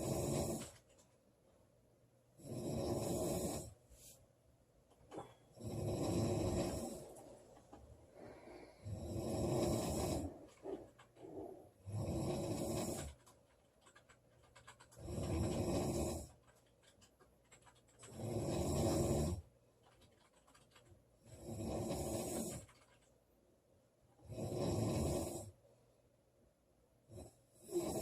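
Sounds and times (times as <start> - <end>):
woman snoring: 0.0 - 0.8, 2.4 - 3.8, 5.6 - 7.2, 8.1 - 13.2, 15.0 - 16.3, 18.1 - 19.4, 21.3 - 22.7, 24.2 - 25.6, 27.1 - 28.0.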